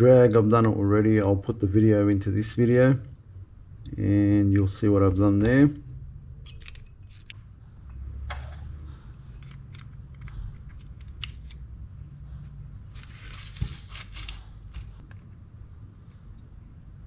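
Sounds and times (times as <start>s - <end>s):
metal parts clicking: 6.4s - 7.4s, 9.2s - 11.8s.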